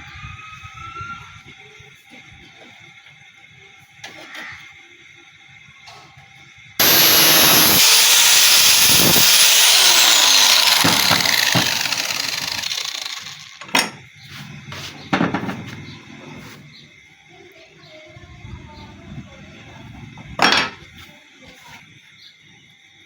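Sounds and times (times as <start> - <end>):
electric power tool whining: 6.8 - 13.7.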